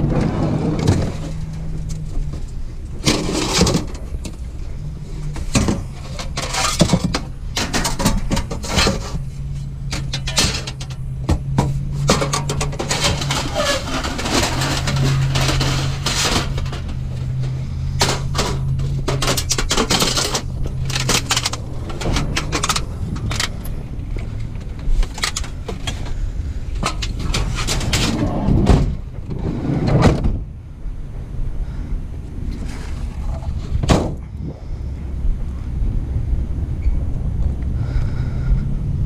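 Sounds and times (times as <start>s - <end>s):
knocks and clatter: 0.0s - 4.5s, 5.3s - 30.5s
vehicle engine humming: 0.0s - 39.0s.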